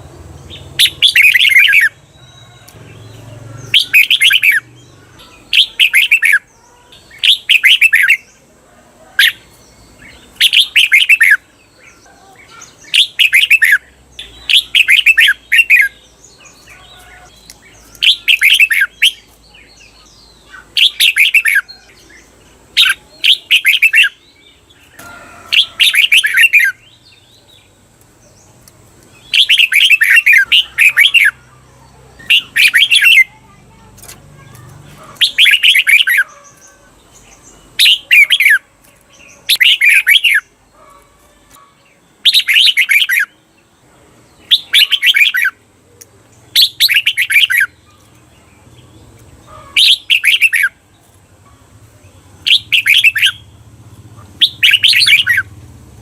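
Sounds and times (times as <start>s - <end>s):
bird singing warbled phrases: 0.0s - 56.0s.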